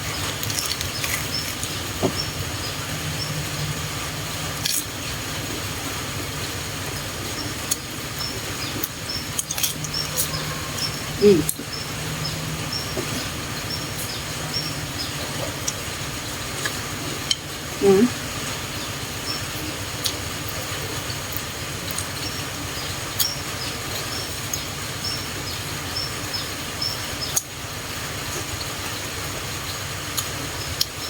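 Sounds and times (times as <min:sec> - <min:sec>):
steady low hum: 0:00.0 - 0:31.0
lettuce being chewed: 0:00.1 - 0:02.6, 0:04.5 - 0:05.0, 0:08.7 - 0:11.7.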